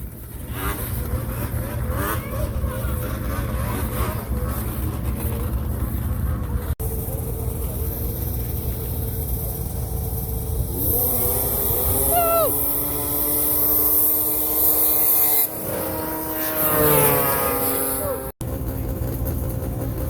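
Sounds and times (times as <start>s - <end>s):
snowmobile engine revving: 0.0s - 20.0s.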